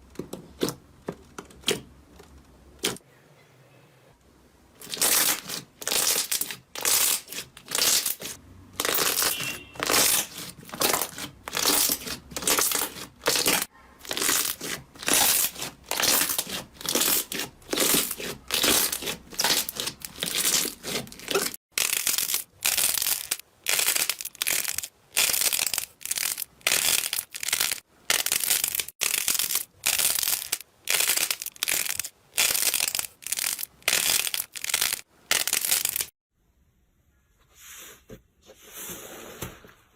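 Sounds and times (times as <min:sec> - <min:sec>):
slime squishing: 0:04.8 - 0:36.1.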